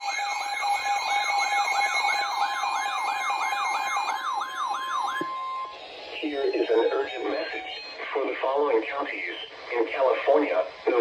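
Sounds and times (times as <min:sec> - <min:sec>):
electronic alert siren sweeping: 0:00.0 - 0:08.0
steady held alert tones: 0:00.0 - 0:08.1.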